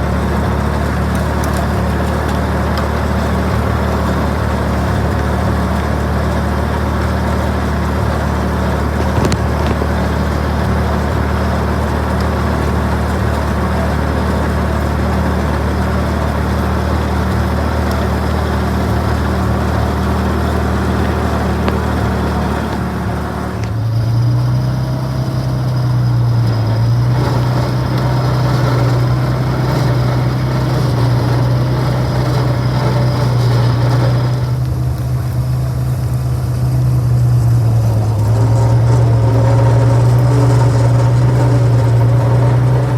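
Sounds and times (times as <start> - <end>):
tractor engine humming: 0.0 - 42.9.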